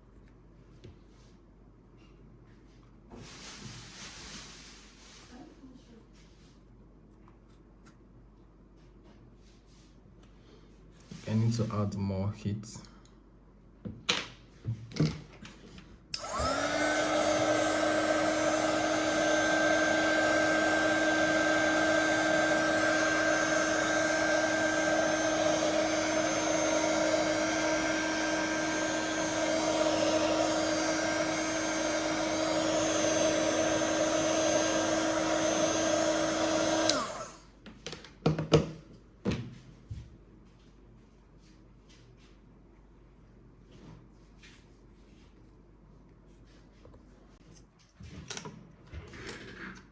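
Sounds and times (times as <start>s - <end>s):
hot-air blower humming: 16.1s - 37.5s.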